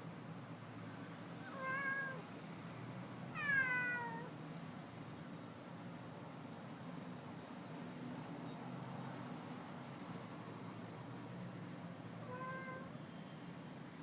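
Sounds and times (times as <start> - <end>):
cat meowing: 1.4 - 2.2, 3.4 - 4.3, 12.2 - 13.0.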